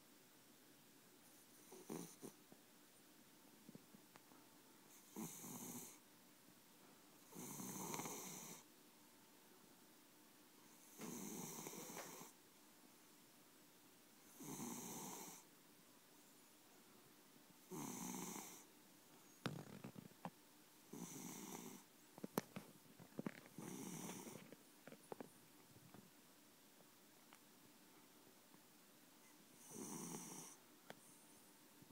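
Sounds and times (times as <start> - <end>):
cat snoring: 1.6 - 2.4, 4.9 - 6.0, 7.2 - 8.6, 10.7 - 12.4, 14.2 - 15.5, 17.7 - 18.7, 20.9 - 21.9, 23.5 - 24.4, 29.6 - 30.6.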